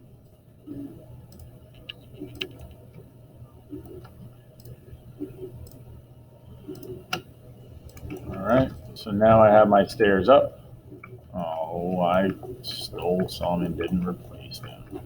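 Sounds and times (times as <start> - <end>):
steady low hum: 0.0 - 15.0
computer mouse clicking: 0.2 - 3.1, 3.7 - 5.9, 6.6 - 9.0.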